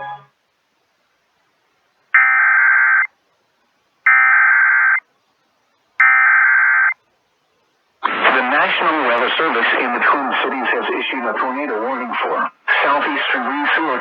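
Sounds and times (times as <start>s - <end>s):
buzzing data tone bursts: 2.2s - 3.1s.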